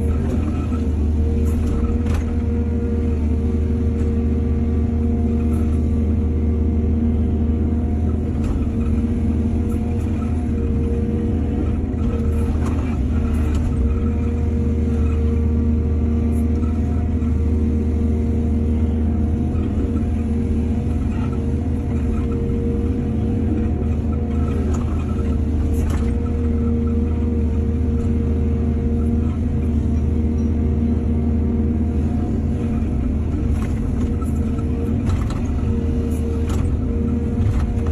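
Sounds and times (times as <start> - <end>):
excavator diesel engine: 0.0 - 37.9.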